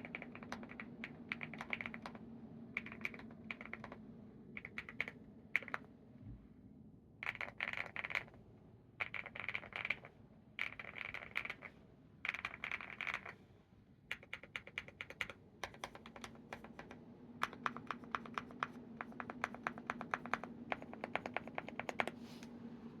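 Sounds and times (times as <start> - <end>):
mechanical keyboard typing: 0.0 - 2.2, 2.8 - 4.0, 4.6 - 5.9, 7.2 - 8.4, 9.0 - 11.7, 12.3 - 13.4, 14.1 - 22.2.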